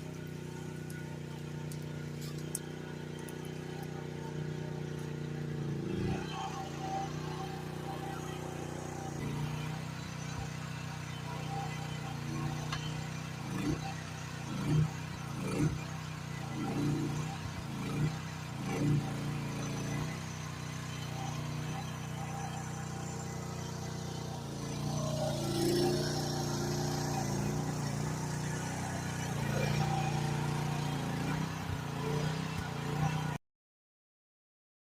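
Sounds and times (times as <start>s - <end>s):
excavator engine running: 0.0s - 33.4s.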